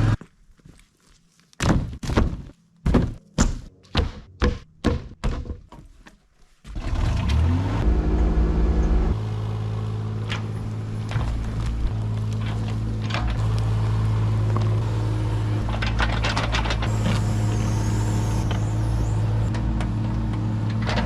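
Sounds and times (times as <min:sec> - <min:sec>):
knocks and scrapes: 0:10.2 - 0:13.8, 0:15.6 - 0:21.0.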